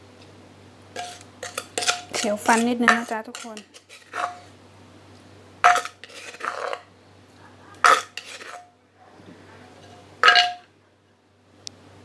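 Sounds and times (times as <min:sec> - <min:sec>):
scraping and handling sounds: 0:01.0 - 0:04.6, 0:05.6 - 0:06.9, 0:07.8 - 0:10.6
cutlery clinking on dishes: 0:07.8 - 0:08.7, 0:09.8 - 0:10.6.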